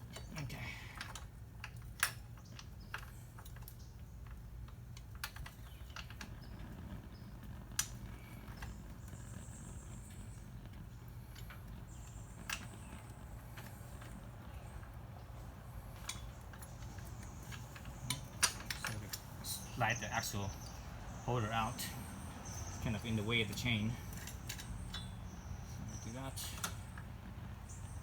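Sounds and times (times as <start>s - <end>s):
steady low hum: 0.0s - 28.0s
metal parts clicking and tapping: 16.0s - 19.9s.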